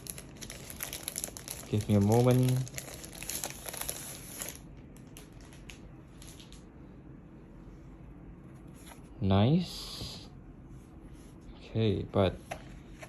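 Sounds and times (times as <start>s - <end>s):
wrapping crinkling: 0.0s - 6.7s.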